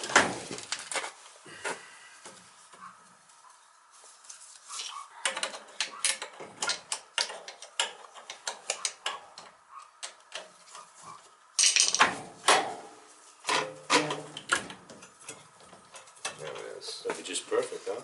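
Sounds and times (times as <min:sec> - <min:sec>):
metal tools clicking and clanking: 0:05.2 - 0:10.5.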